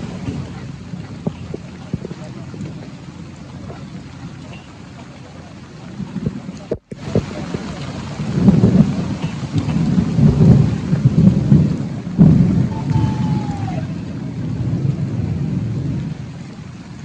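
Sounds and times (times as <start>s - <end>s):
heavy rain: 0.0s - 17.0s
thunder rumbling: 0.0s - 17.0s
sharp thunder clap: 6.2s - 16.4s.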